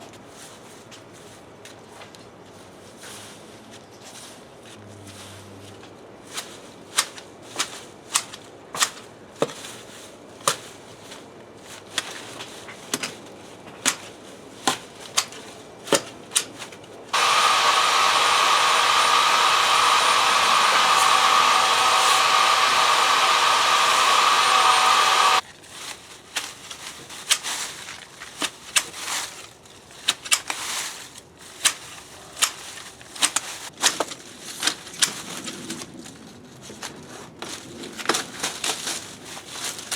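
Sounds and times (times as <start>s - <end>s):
loud steady motor noise: 17.2s - 25.4s
pruning shears snipping: 17.2s - 25.4s.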